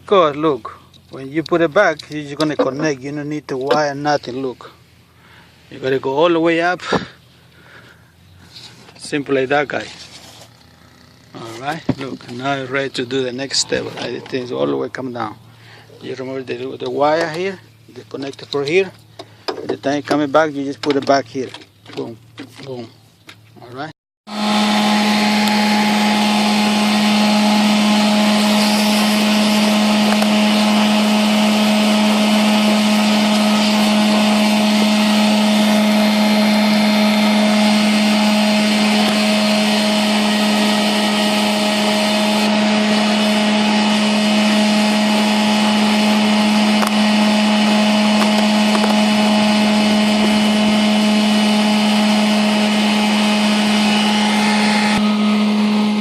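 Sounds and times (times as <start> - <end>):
small electric motor whining: 9.6 - 17.5, 24.3 - 56.0.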